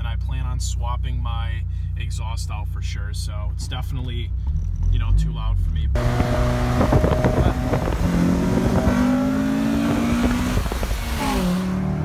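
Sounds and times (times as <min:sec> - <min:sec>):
car engine accelerating hard: 0:04.4 - 0:12.0.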